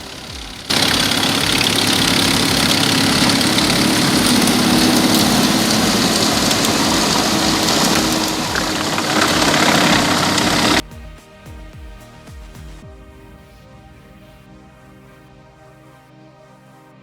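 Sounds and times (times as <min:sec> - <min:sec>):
machine engine running: 0:00.0 - 0:10.8.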